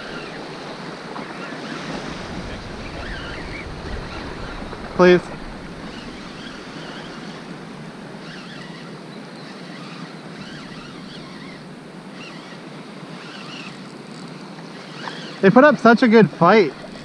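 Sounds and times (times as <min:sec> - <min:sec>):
wind on microphone: 0:00.0 - 0:08.8
surf washing at shore: 0:00.0 - 0:17.0.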